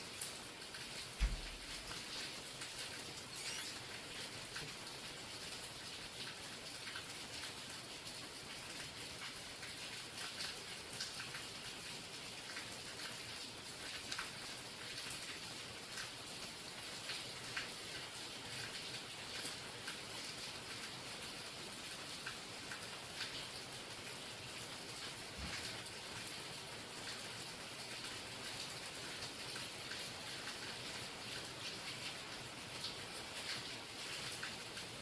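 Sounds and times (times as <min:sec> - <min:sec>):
rain drops tapping: 0:00.0 - 0:35.0
rain falling: 0:00.0 - 0:35.0
low thump: 0:01.2 - 0:01.5.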